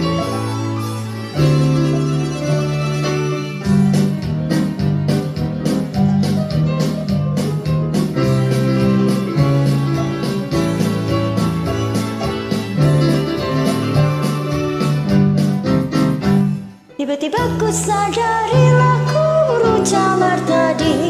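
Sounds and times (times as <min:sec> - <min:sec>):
guitar: 0:00.0 - 0:21.0
keyboard: 0:00.0 - 0:21.0
steady beat: 0:01.2 - 0:16.4.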